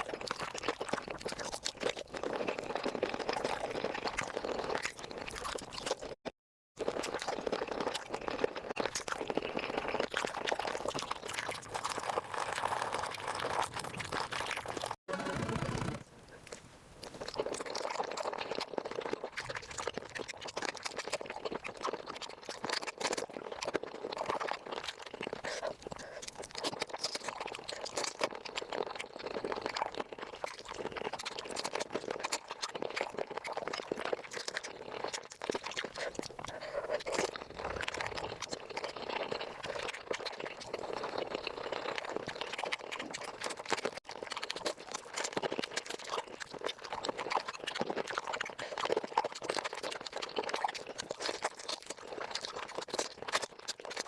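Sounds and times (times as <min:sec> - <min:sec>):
crunching and chewing: 0:00.0 - 0:54.0.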